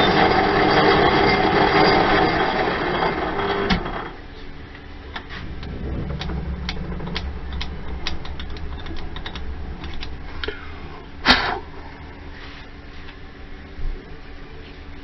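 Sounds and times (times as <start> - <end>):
steady low hum: 4.2 - 15.0.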